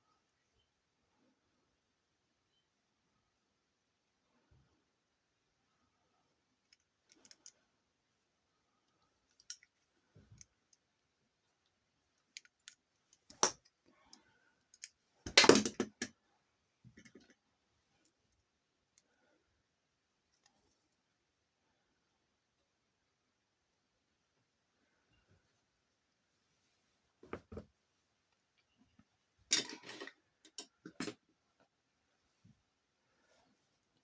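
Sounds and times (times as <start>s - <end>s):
objects clattering: 29.5s - 31.2s.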